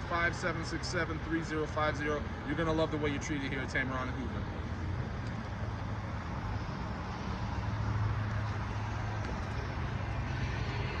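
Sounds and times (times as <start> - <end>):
motor vehicle hum: 0.0 - 11.0
traffic noise: 0.0 - 11.0.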